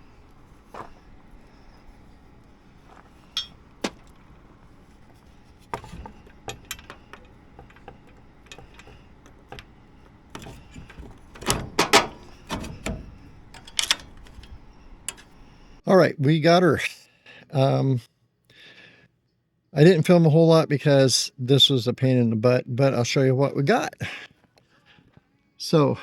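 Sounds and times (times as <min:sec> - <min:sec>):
sharp clicks and knocks: 0:00.0 - 0:15.8.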